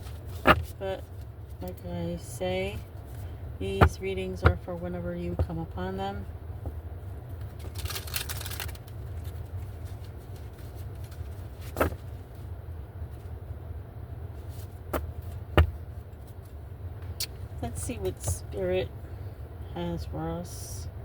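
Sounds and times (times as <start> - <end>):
steady low hum: 0.0 - 21.0
cards rustling: 7.4 - 12.4.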